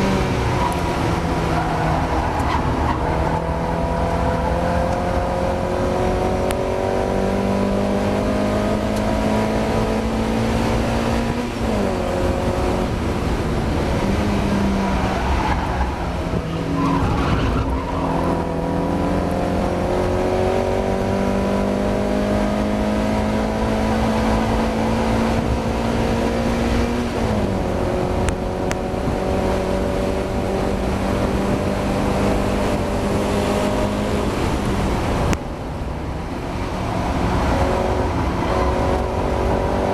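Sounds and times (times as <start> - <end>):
race car engine accelerating: 0.0 - 35.4, 36.2 - 39.9.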